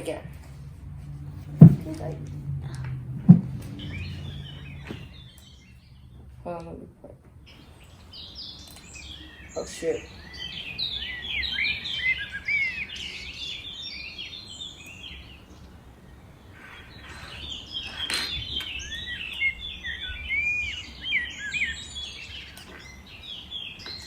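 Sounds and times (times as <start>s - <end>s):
birds chirping rapidly: 0.0s - 24.0s
soft knock: 1.4s - 5.0s.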